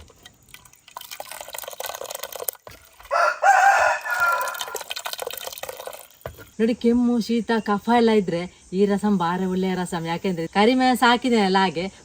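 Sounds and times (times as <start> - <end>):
rooster crowing: 3.1 - 4.9.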